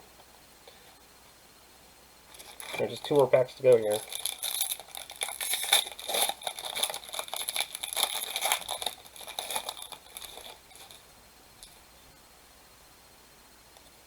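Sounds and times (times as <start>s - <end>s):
wrapper tearing and crinkling: 2.3s - 11.0s.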